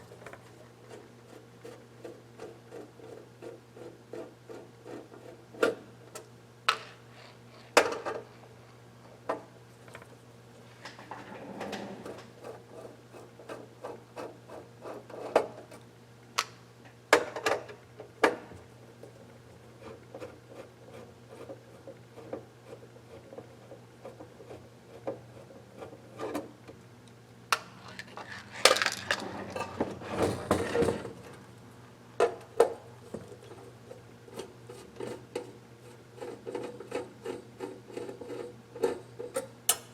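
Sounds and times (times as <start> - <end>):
hands and tools handling device: 27.6 - 30.8.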